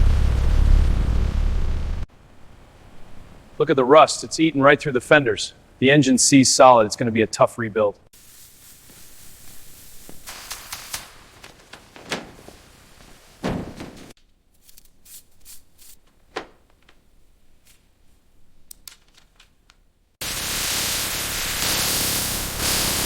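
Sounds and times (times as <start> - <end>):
heavy thunk: 13.4 - 14.1.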